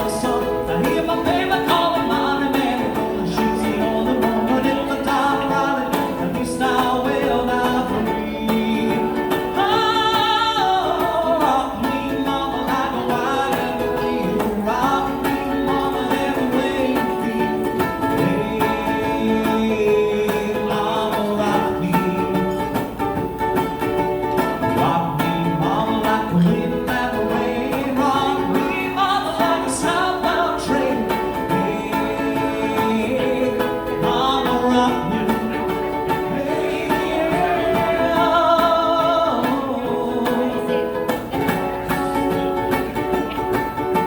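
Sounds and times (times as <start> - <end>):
person singing: 0.0 - 23.3, 24.5 - 44.0
strummed acoustic guitar: 0.0 - 44.0.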